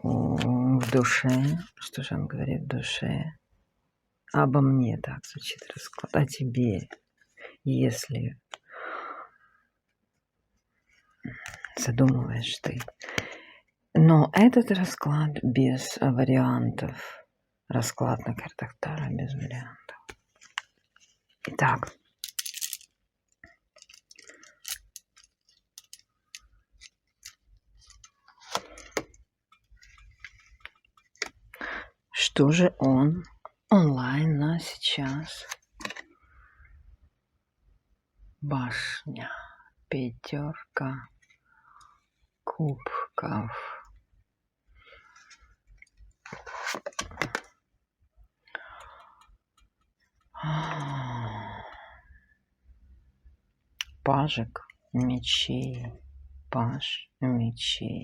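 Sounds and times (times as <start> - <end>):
cards being shuffled: 0.2 - 1.7, 20.1 - 22.9, 23.7 - 31.4, 46.2 - 47.5
cards snapping and rustling: 22.2 - 22.9.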